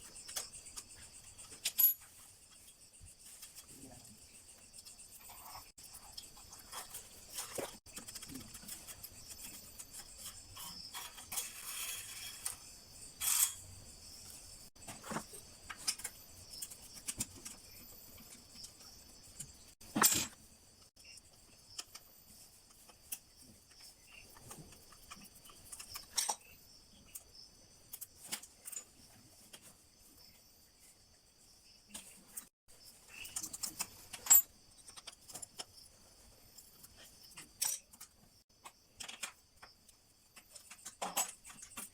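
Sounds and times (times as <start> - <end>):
crickets chirring: 0.0 - 41.9
metallic clicks of tools: 37.4 - 38.3.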